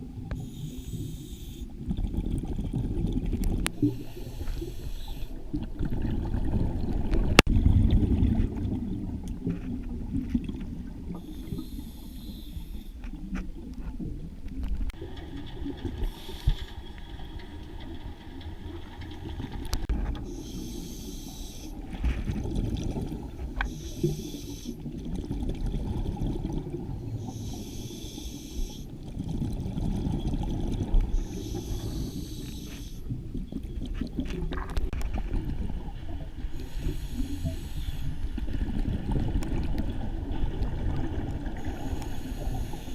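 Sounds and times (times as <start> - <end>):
low rumble of water: 0.0 - 42.9
diver breathing through regulator: 0.4 - 1.8, 3.8 - 5.4, 11.1 - 13.0, 16.0 - 17.0, 20.2 - 21.8, 23.6 - 24.9, 27.2 - 29.0, 31.1 - 33.1, 36.5 - 38.3, 41.6 - 42.9.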